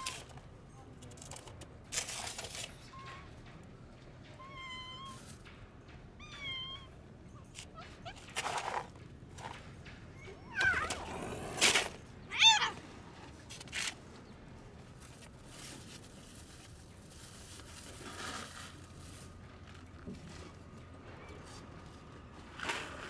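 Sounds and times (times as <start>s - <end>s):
cat meowing: 6.2s - 6.9s, 10.2s - 11.3s, 12.3s - 12.8s.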